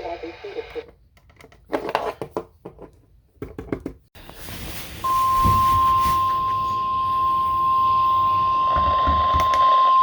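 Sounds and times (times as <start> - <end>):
steady warning alarm tone: 5.0 - 10.0.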